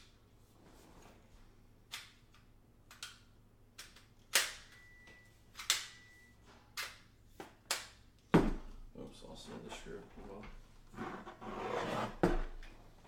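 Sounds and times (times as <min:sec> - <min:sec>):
faint high ringing tone: 0:04.6 - 0:06.6.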